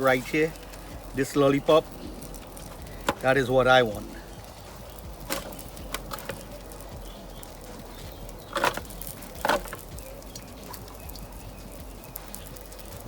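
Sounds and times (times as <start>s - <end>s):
tongs clicking on grill: 4.8s - 13.0s.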